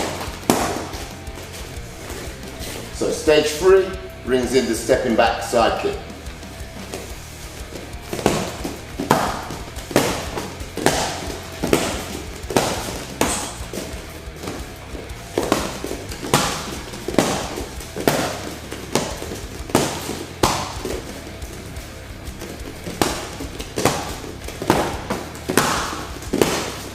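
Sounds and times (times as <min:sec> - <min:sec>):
strikes smacking into pads: 0:00.0 - 0:01.7, 0:06.8 - 0:21.5, 0:22.3 - 0:26.9
background music: 0:00.0 - 0:26.9.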